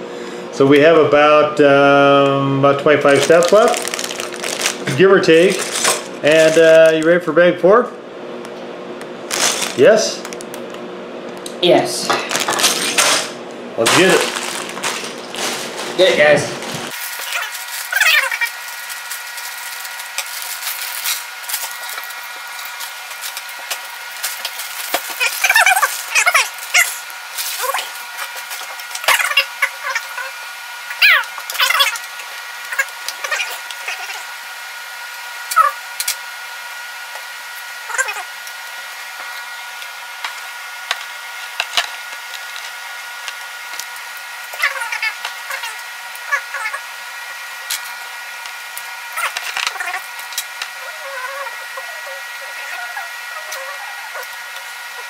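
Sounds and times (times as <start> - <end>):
squeaky sped-up voice chirps: 17.2 - 18.6, 25.2 - 27.0, 31.0 - 32.0, 37.9 - 38.3, 44.6 - 46.8, 50.8 - 54.3.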